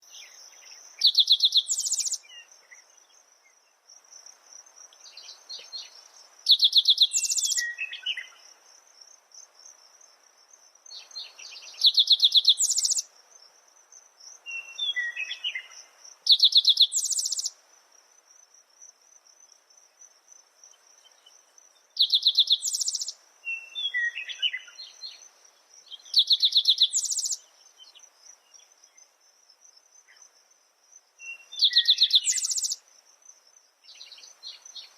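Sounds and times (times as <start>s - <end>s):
soft bird chirps: 0.0s - 8.6s, 10.8s - 13.1s, 13.9s - 17.6s, 20.7s - 29.2s, 31.2s - 32.9s, 33.8s - 34.9s
high insect trill: 0.1s - 34.9s.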